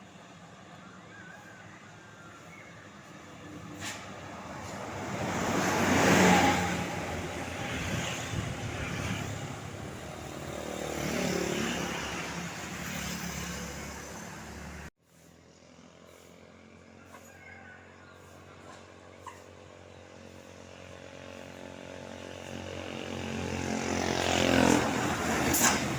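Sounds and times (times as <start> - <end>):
road vehicles passing close by: 0.0 - 25.9.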